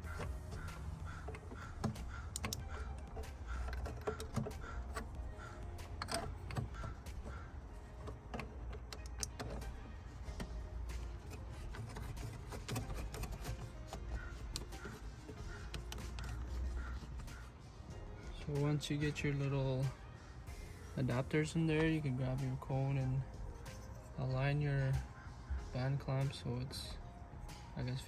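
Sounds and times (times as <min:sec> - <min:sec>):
clicks of parts being handled: 0:00.0 - 0:17.6.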